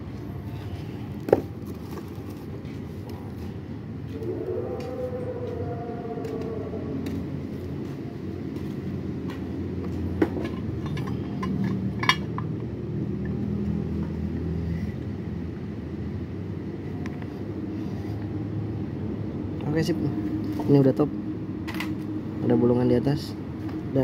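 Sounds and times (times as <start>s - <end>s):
metal parts clinking and tapping: 10.2s - 12.5s.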